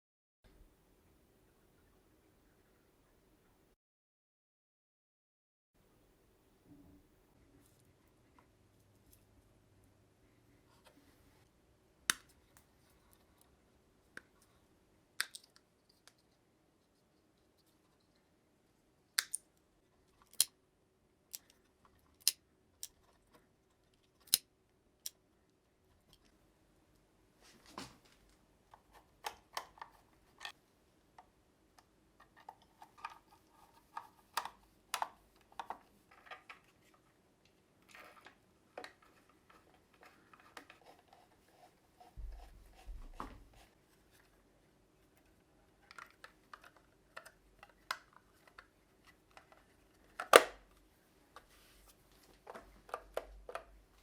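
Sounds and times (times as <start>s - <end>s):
faint steady hum: 0.5s - 3.8s
soft rustling: 51.0s - 52.9s.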